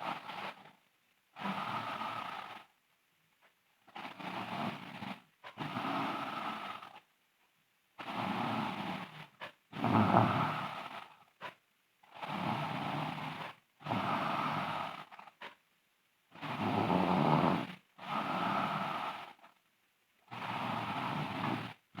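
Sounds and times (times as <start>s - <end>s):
girl snoring loudly: 1.4s - 2.6s, 4.0s - 6.9s, 9.8s - 11.0s, 12.2s - 15.1s, 16.4s - 19.4s, 20.3s - 22.0s.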